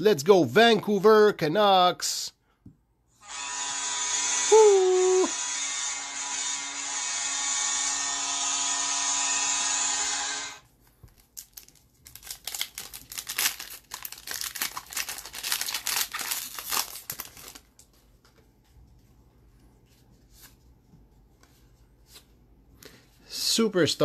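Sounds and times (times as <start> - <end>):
loud steady buzz: 3.2 - 10.6
wrapper crinkling and tearing: 11.0 - 17.9.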